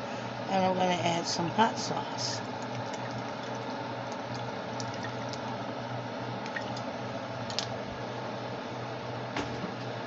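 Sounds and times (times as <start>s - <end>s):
steady hum: 0.0s - 10.0s
sauce dripping into pot: 2.5s - 5.5s.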